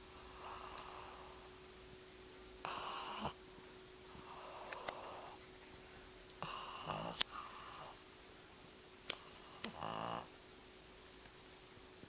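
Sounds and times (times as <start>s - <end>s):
dog snoring: 0.1s - 1.5s, 2.6s - 3.4s, 4.1s - 5.4s, 6.4s - 8.0s, 9.2s - 10.3s.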